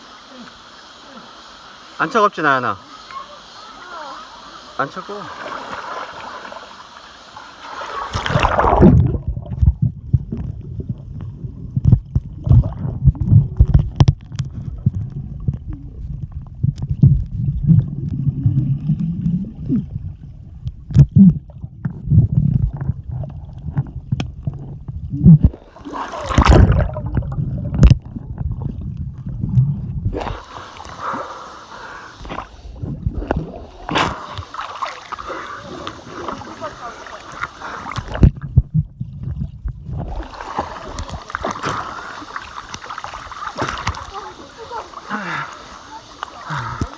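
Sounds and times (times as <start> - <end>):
stream water gurgling: 0.0 - 46.9
water splash: 2.4 - 10.5, 25.4 - 28.9, 29.5 - 38.7, 39.9 - 46.9.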